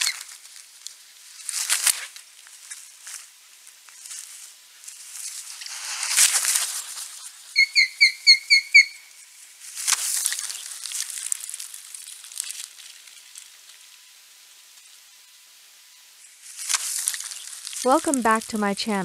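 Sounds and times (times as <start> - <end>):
osprey whistled calls: 0.0 - 0.4, 7.5 - 9.2.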